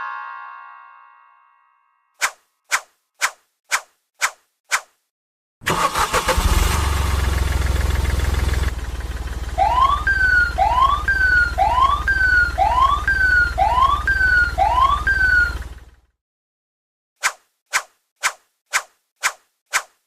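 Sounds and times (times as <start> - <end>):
siren wailing whoop: 9.6 - 15.6.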